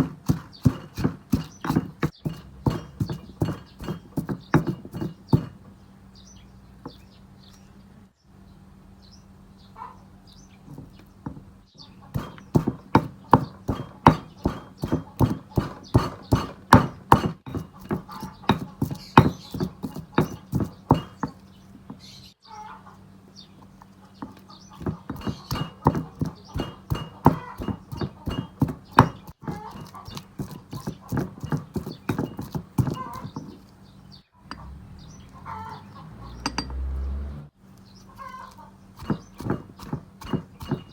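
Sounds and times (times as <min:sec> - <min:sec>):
rapid knocking of food preparation: 0:00.0 - 0:05.8, 0:10.7 - 0:22.1, 0:24.2 - 0:33.7, 0:38.2 - 0:40.9.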